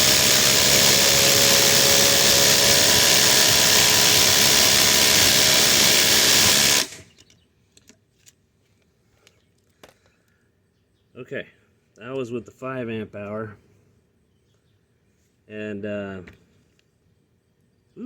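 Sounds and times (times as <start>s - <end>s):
impact drivers hammering screws: 0.0s - 7.1s.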